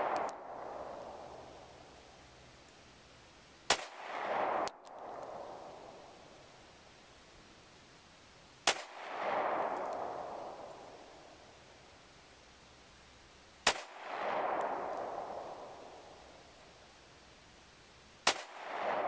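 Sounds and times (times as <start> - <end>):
pistol shots with echo: 3.7 - 5.6, 8.7 - 10.6, 13.6 - 15.8, 18.2 - 19.0.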